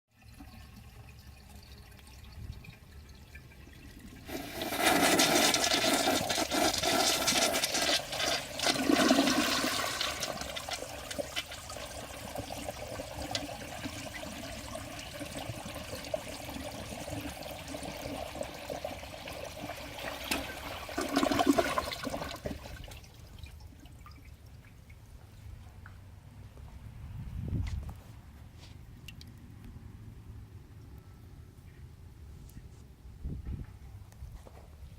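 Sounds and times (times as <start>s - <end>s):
water running as tank refills: 0.1s - 24.3s
toilet flushing: 3.3s - 23.1s.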